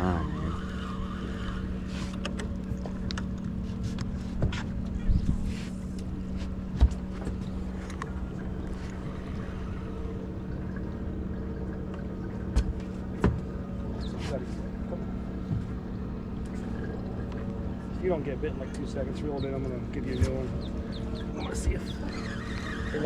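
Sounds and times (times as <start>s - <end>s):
low mechanical hum: 0.0s - 23.0s
sharp knocks and thumps: 12.5s - 13.5s.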